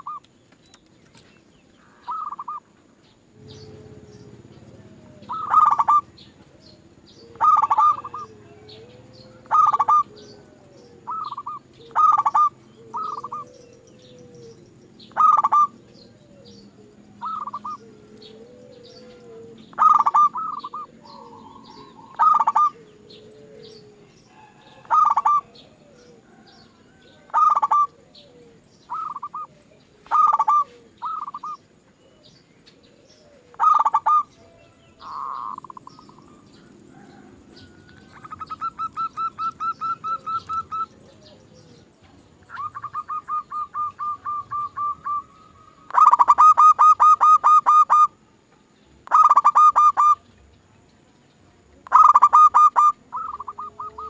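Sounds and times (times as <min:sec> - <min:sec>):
doves cooing: 0:00.0 - 0:00.3, 0:01.1 - 0:50.6, 0:51.6 - 0:54.0
high bird chirps: 0:00.0 - 0:02.7, 0:03.4 - 0:08.8, 0:16.5 - 0:17.8, 0:18.8 - 0:22.8, 0:28.8 - 0:31.7, 0:33.6 - 0:34.4, 0:37.7 - 0:41.8, 0:42.4 - 0:48.2, 0:51.9 - 0:54.0.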